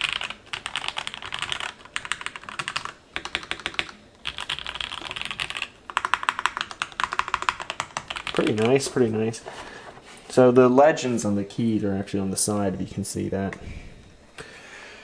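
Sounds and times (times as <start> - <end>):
mechanical keyboard typing: 0.0 - 9.0.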